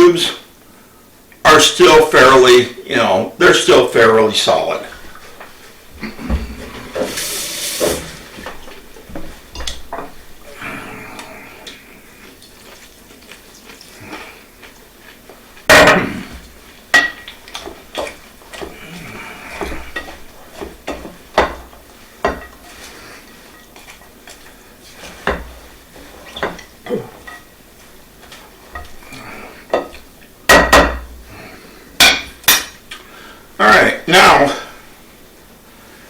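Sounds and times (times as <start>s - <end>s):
utensil scraping a dish: 6.3s - 8.7s, 17.0s - 27.5s.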